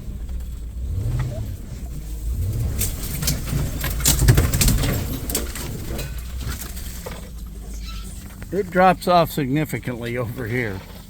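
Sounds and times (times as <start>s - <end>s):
vehicle engine rumble: 0.0s - 11.0s
clicks and rattles: 2.6s - 8.7s.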